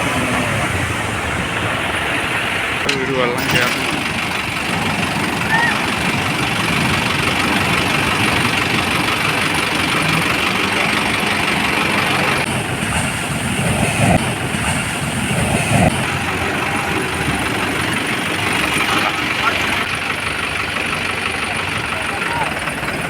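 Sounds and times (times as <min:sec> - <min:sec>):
outboard engine running: 0:00.0 - 0:23.0.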